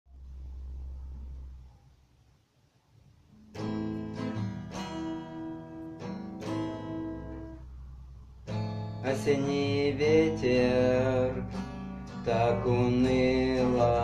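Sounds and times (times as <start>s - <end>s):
low hum: 0.1s - 2.3s
acoustic guitar strumming: 3.3s - 14.0s.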